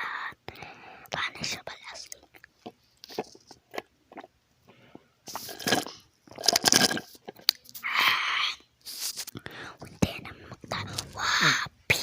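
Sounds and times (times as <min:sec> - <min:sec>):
crunchy food being chewed: 0:02.0 - 0:04.4, 0:05.3 - 0:07.8.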